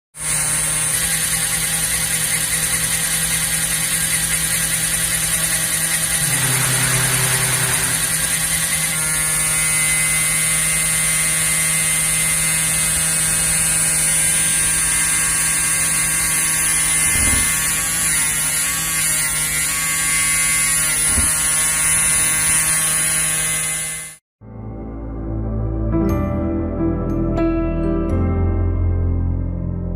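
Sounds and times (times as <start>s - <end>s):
servo motor whining hum: 0.3s - 24.2s.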